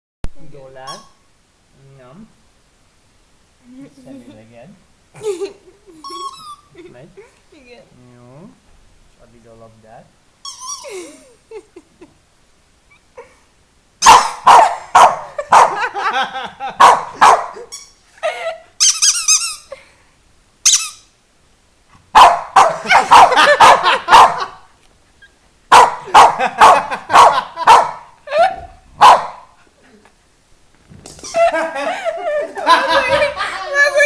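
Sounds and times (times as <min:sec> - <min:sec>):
dog whining: 0:06.0 - 0:06.8, 0:10.4 - 0:11.1, 0:25.2 - 0:25.4
dog barking: 0:14.0 - 0:15.9, 0:16.8 - 0:17.6, 0:22.1 - 0:24.6, 0:25.7 - 0:28.1, 0:29.0 - 0:29.6.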